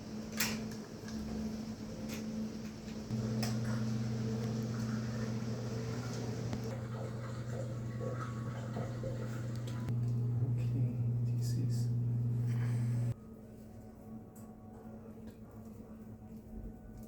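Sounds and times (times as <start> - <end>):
steady low hum: 0.0 - 13.2
louder deeper hum: 9.9 - 13.2.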